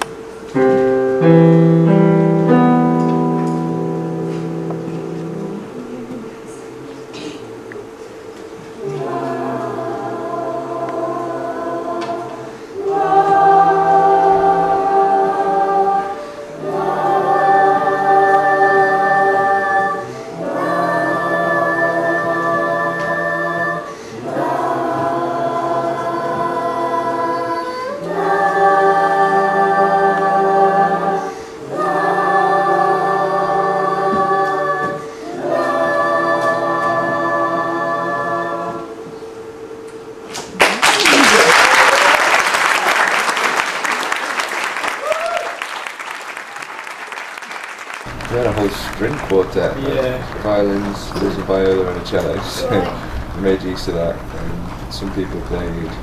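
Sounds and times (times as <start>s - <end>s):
children's choir singing: 0.0s - 40.2s, 48.1s - 56.0s
steady held note: 0.6s - 7.5s.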